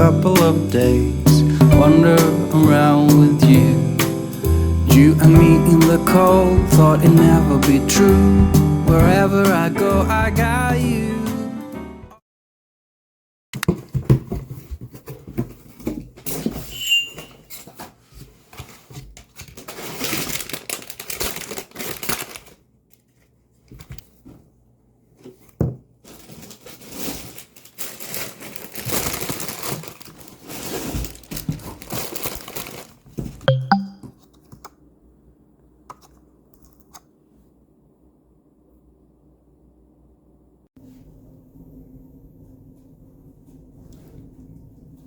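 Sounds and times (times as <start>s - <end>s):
packaging crinkling and tearing: 18.7s - 24.1s, 26.0s - 33.5s.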